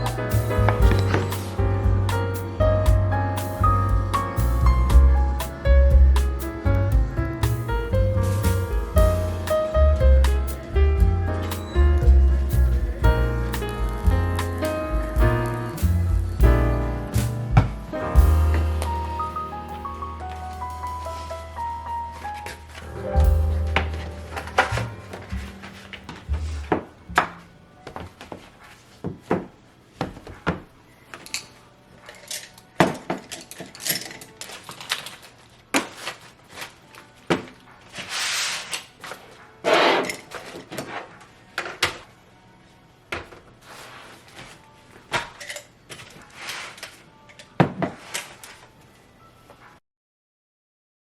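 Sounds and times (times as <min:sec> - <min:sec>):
rustling or scraping: 0:18.3 - 0:29.1, 0:37.8 - 0:41.5, 0:43.6 - 0:47.1.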